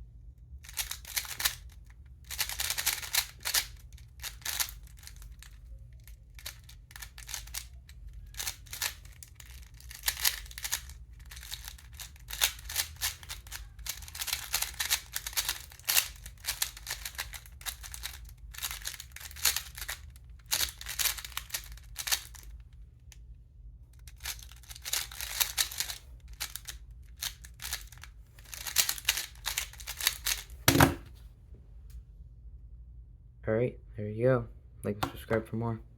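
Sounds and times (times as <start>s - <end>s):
puzzle cube clicking turns: 0.6s - 22.6s, 24.0s - 30.8s.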